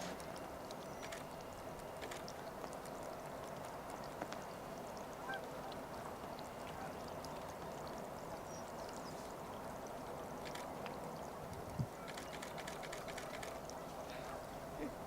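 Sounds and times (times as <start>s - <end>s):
distant bird calls: 0.0s - 15.0s
faint outdoor ambience: 0.0s - 15.0s.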